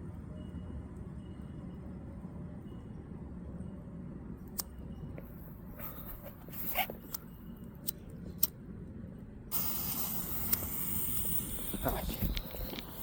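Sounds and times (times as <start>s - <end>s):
handling rustling noise: 5.2s - 7.4s
hissing noise: 9.5s - 13.0s.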